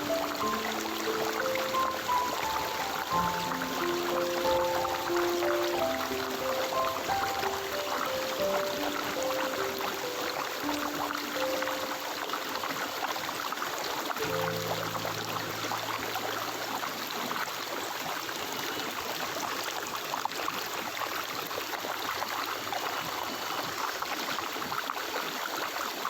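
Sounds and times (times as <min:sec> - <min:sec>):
low held musical tone: 0:00.0 - 0:13.2, 0:14.2 - 0:17.8
stream water gurgling: 0:00.0 - 0:26.0.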